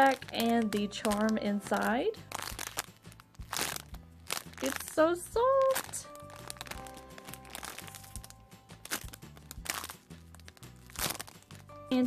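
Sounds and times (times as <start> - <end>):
plastic packaging crinkling: 0.0 - 11.8
background music with bass line: 0.0 - 12.0.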